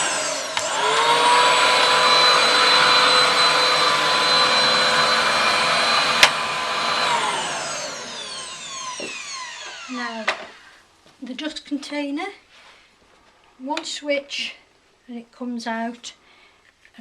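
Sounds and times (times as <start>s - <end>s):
vacuum cleaner running: 0.0s - 10.7s
vacuum switch click: 6.2s - 6.4s.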